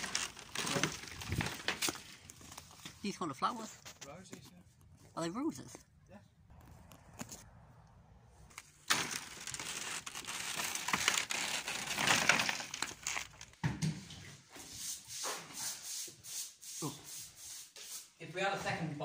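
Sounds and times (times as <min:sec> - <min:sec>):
wallpaper tearing: 0:08.9 - 0:13.5.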